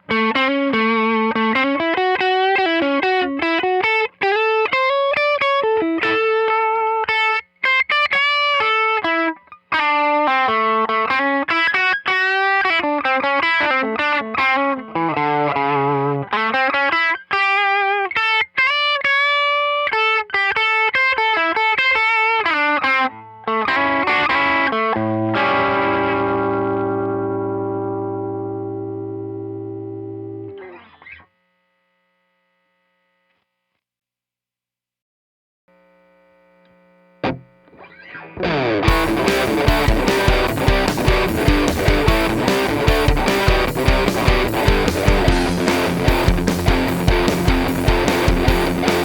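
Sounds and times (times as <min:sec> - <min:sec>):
electric guitar lead line: 0:00.0 - 0:31.2, 0:37.2 - 0:49.0
ringing guitar chord: 0:23.8 - 0:30.9, 0:37.2 - 0:49.0.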